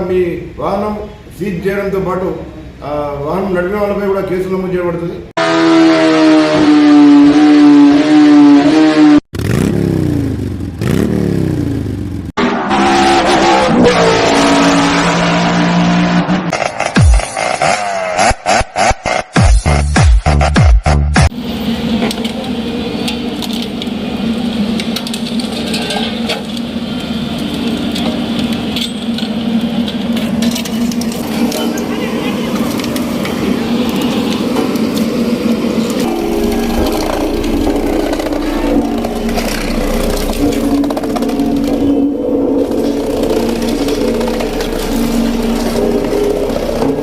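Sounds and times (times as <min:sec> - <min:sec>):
motorcycle engine revving: 0:05.4 - 0:19.5, 0:32.6 - 0:47.0
road roller engine running: 0:21.3 - 0:47.0
metal cracking and crunching: 0:35.9 - 0:47.0.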